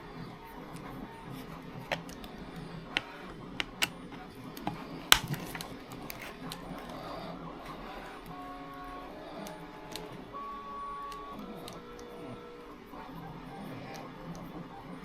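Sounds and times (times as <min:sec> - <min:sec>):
small sharp plastic clicks: 0:02.9 - 0:07.0.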